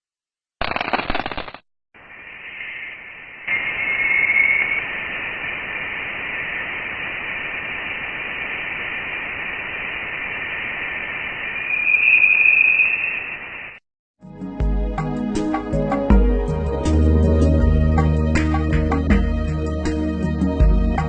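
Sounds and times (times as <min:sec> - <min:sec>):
radio static hiss: 0:00.6 - 0:13.8.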